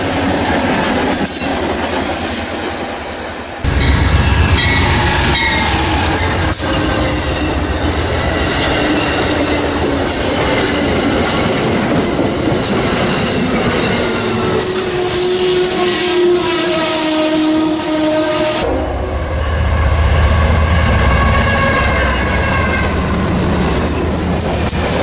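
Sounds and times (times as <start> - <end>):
train rumbling past: 0.0 - 25.0
train wheels squealing on rail: 4.3 - 18.6.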